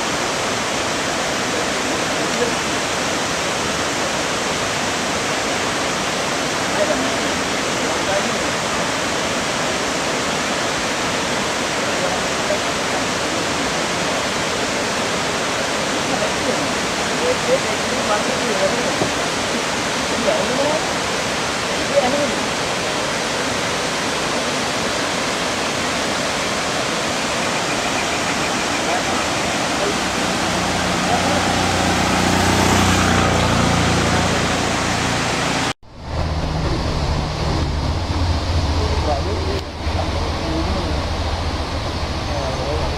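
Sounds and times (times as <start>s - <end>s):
waterfall rushing: 0.0s - 42.9s.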